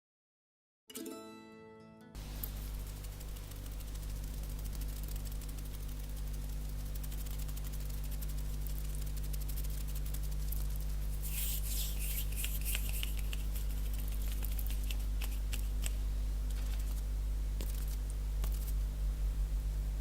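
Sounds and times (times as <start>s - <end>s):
steady low hum: 2.2s - 20.0s
skin rubbing: 2.4s - 16.0s
quick finger taps: 2.8s - 17.0s.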